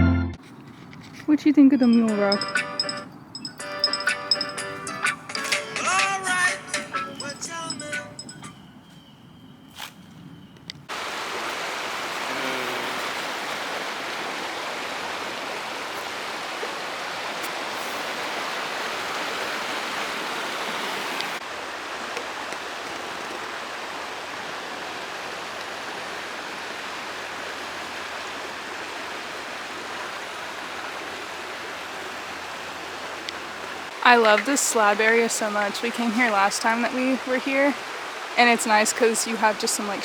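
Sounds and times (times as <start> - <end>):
creek water running over rocks: 10.9 - 40.0.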